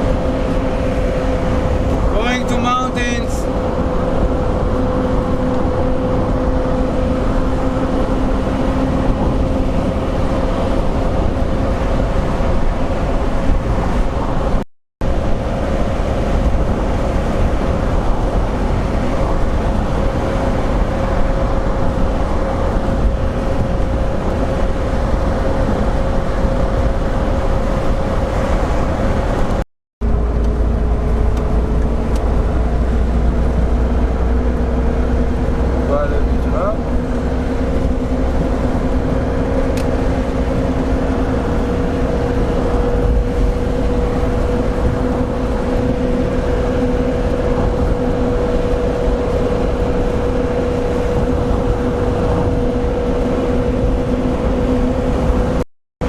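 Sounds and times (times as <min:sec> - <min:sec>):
car engine hum: 0:00.0 - 0:55.6
road noise: 0:00.0 - 0:55.7.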